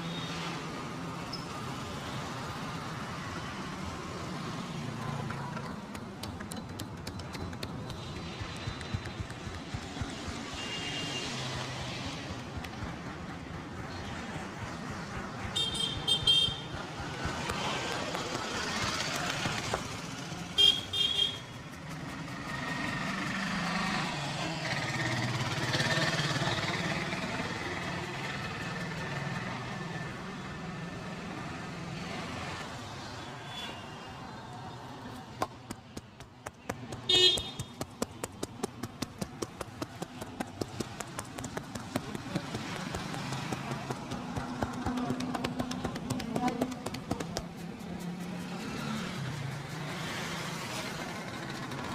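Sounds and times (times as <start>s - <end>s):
street traffic: 0.0s - 51.9s
quick even taps: 5.4s - 10.6s, 35.4s - 48.3s
vehicle horns honking: 10.5s - 11.5s, 15.6s - 16.8s, 20.6s - 21.5s, 37.1s - 37.8s.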